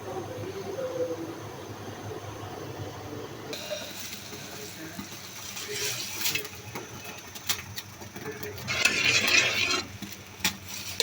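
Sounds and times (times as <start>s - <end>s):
food sizzling in hot oil: 3.6s - 11.0s.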